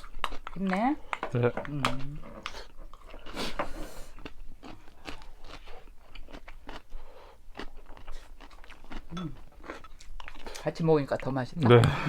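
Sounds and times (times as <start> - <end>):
person chewing crisp food: 0.0 - 10.7.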